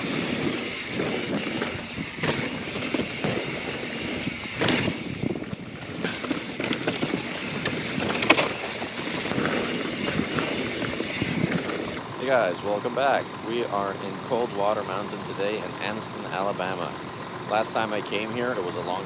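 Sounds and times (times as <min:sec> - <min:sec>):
bike rattles and clicks: 0:00.0 - 0:12.0
wind on microphone: 0:00.0 - 0:12.0
bike tyres rolling on dirt: 0:00.0 - 0:19.0.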